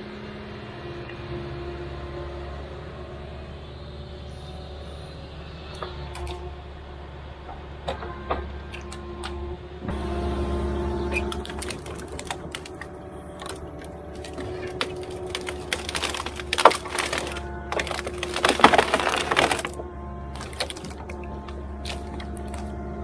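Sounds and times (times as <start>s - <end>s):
music with held tones: 0.0s - 23.0s
sharp clicks and cracks: 11.2s - 22.7s.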